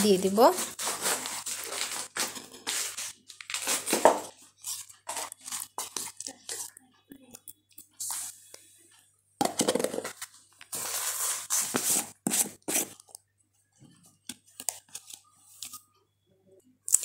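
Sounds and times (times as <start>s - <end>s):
rustling and scraping in kitchen: 0.0s - 6.8s, 7.9s - 13.2s.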